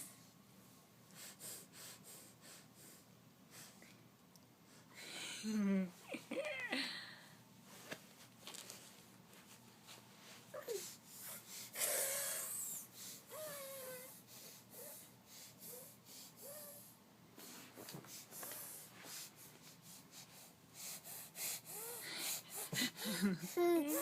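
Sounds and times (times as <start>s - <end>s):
breathy sniffs: 1.1s - 3.8s, 14.2s - 23.2s.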